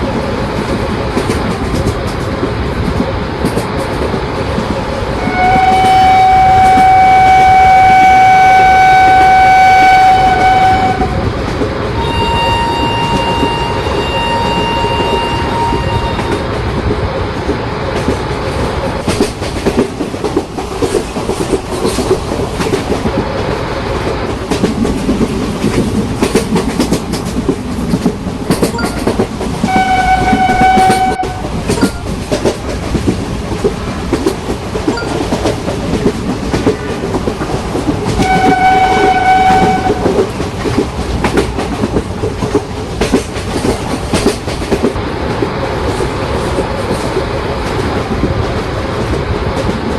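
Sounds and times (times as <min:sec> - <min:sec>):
train horn: 0:05.2 - 0:11.3, 0:12.0 - 0:16.4, 0:29.6 - 0:31.5, 0:38.1 - 0:40.2.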